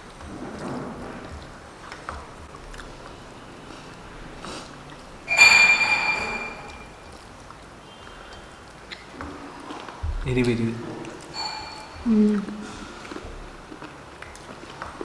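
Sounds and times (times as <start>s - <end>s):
glass clinking: 5.2s - 7.2s, 11.2s - 13.3s.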